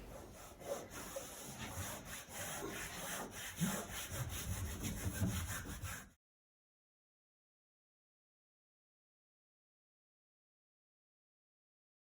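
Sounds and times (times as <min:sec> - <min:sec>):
rubbing and scraping: 0:00.0 - 0:06.2.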